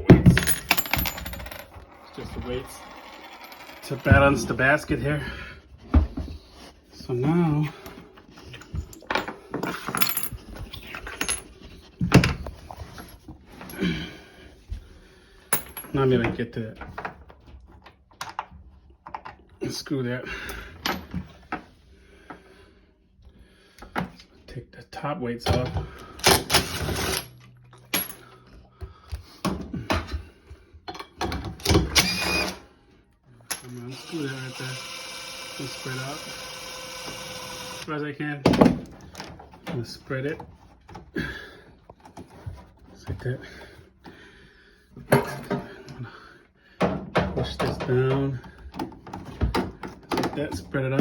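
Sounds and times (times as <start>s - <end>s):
metal tools clinking: 0.2s - 4.8s, 8.4s - 14.0s
tools clanking on metal: 45.0s - 46.0s.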